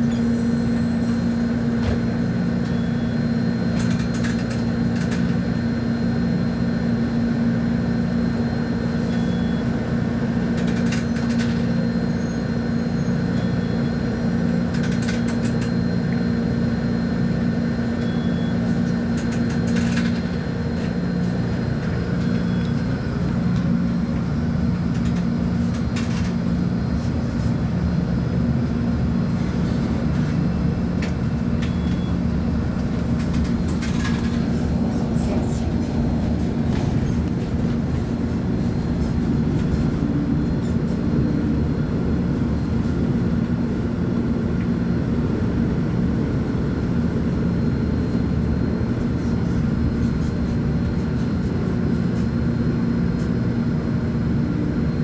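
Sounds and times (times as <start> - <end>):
bus diesel engine running: 0.0 - 55.0.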